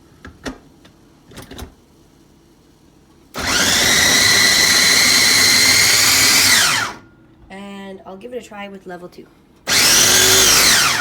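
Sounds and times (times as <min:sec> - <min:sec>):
food chopper motor whining: 0:03.4 - 0:07.0, 0:09.7 - 0:11.0.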